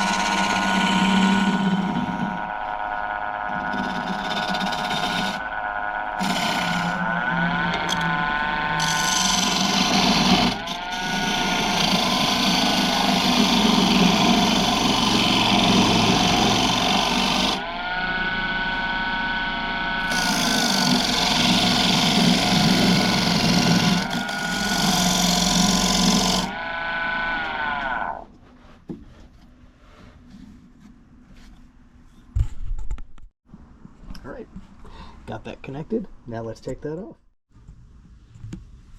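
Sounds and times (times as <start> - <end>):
lathe motor whine: 0.0 - 28.2
gouge scraping spinning wood: 0.0 - 30.6.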